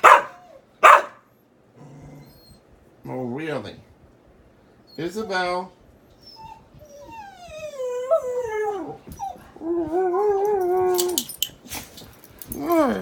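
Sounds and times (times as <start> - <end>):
dog howling and whining: 0.2 - 0.8, 1.8 - 2.7, 4.9 - 11.4, 12.5 - 13.0.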